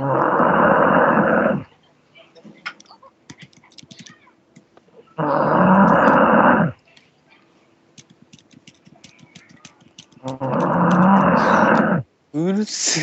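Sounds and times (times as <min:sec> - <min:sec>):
loud snoring: 0:00.0 - 0:01.7, 0:05.2 - 0:06.7, 0:10.3 - 0:12.0.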